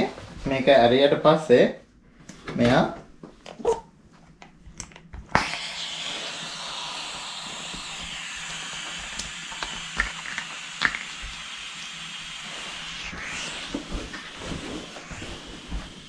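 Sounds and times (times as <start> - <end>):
air hissing into mattress: 5.3 - 16.0.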